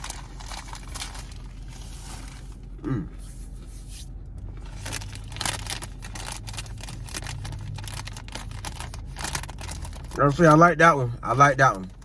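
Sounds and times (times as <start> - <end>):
chewing crunchy rice crisps: 4.6 - 10.2.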